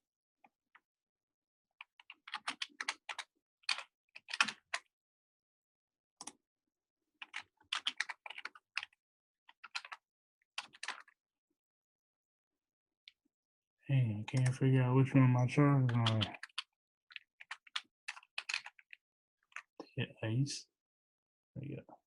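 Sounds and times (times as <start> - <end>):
computer keyboard typing: 1.9 - 4.9, 7.2 - 10.0, 10.6 - 11.1, 14.3 - 18.9.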